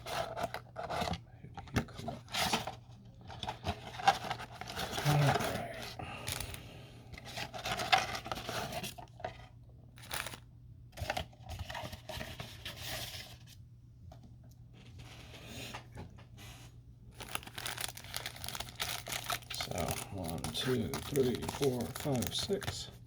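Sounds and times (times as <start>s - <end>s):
tearing and rustling wrappers: 1.9s - 6.6s, 7.2s - 9.4s, 10.0s - 10.4s, 17.1s - 23.0s.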